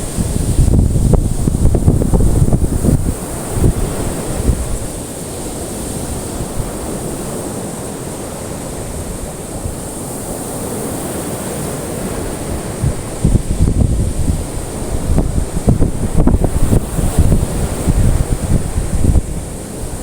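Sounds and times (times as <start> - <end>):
high steady hiss: 0.0 - 20.0
waves washing onto shore: 0.0 - 20.0.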